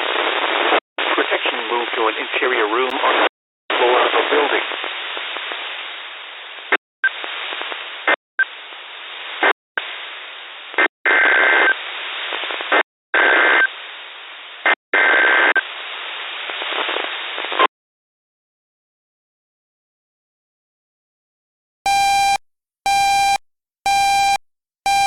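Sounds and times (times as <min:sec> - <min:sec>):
radio static hiss: 0:00.0 - 0:17.7.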